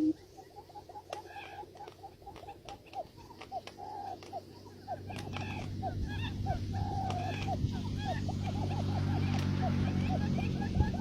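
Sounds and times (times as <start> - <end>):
quail chirping: 0.0 - 11.0
sharp clicks: 5.1 - 5.8.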